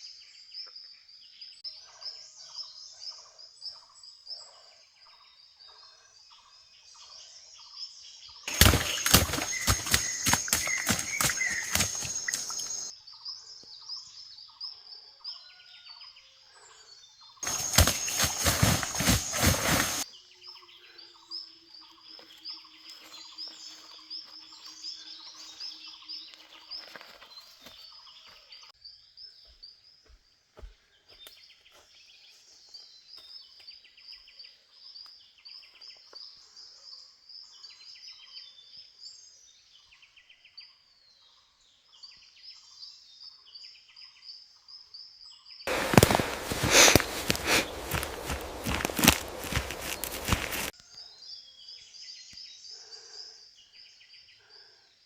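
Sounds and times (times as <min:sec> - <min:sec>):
birds chirping: 0:08.3 - 0:14.3, 0:16.6 - 0:34.6, 0:45.7 - 0:54.6.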